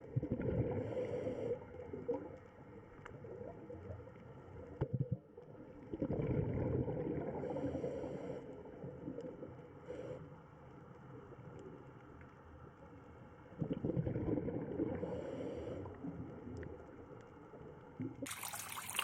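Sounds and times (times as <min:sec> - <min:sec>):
water gurgling and bubbling: 0:00.0 - 0:01.1, 0:05.1 - 0:07.6, 0:13.6 - 0:15.0, 0:18.1 - 0:19.0.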